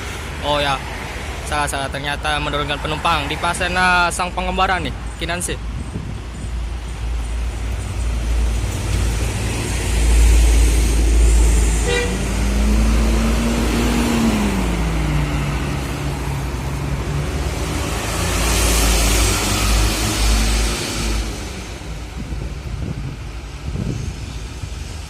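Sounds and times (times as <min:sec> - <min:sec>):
low traffic rumble: 0:00.0 - 0:25.0
passing vehicle engine: 0:07.0 - 0:25.0
short horn toot: 0:11.8 - 0:12.3.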